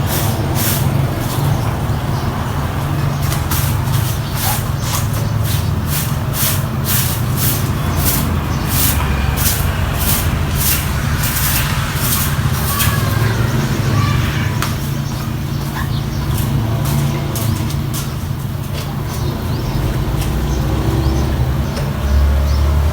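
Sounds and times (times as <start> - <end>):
broom sweeping: 0.0 - 1.6, 3.2 - 15.3
low motor hum: 0.0 - 22.9.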